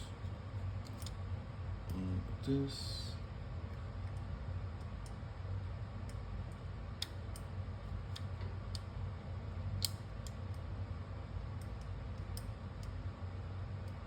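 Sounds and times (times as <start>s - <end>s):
steady low hum: 0.0s - 14.0s
light clicks of small screws: 0.8s - 1.2s, 9.8s - 10.6s.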